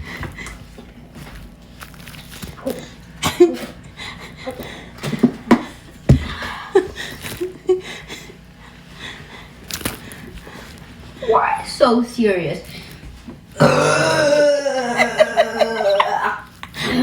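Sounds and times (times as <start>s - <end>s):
loud burps: 13.6s - 17.0s.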